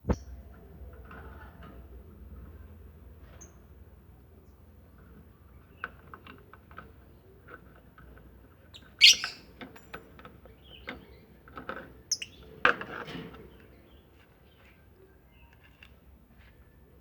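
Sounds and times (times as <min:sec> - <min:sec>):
lovebirds chirping: 0:08.7 - 0:09.5, 0:12.1 - 0:12.5.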